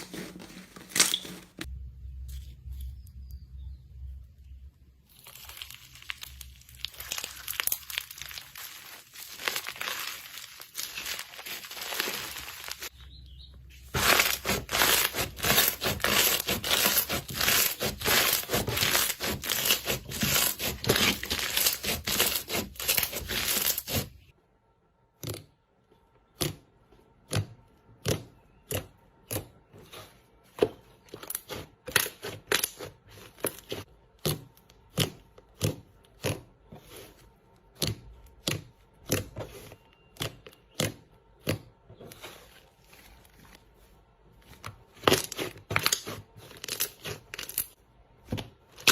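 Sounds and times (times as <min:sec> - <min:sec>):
slime crackling and popping: 0:05.1 - 0:12.9, 0:45.0 - 0:47.8.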